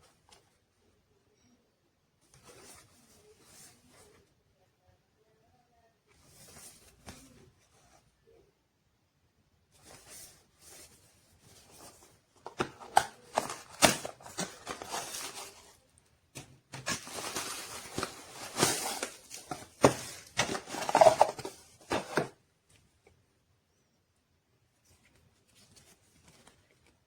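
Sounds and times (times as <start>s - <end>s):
packaging rustling and scraping: 9.8s - 15.8s, 16.4s - 22.4s.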